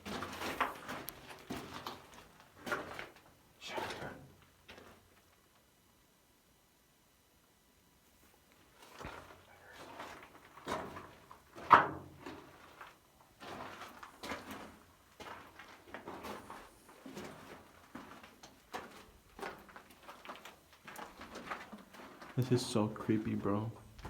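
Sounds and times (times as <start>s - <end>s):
footsteps on loose rock: 12.3s - 22.4s.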